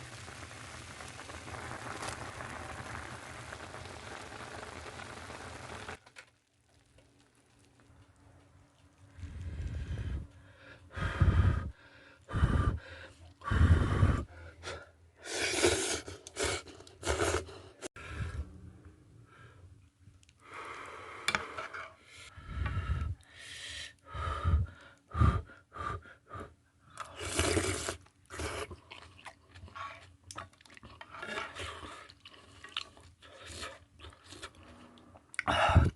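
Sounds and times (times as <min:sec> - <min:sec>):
person slurping noodles: 0:15.2 - 0:17.6, 0:27.0 - 0:29.4.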